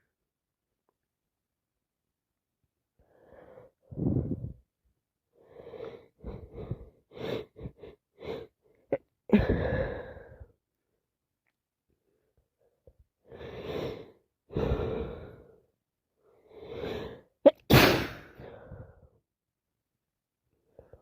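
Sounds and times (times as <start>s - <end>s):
person sneezing: 17.5s - 18.4s.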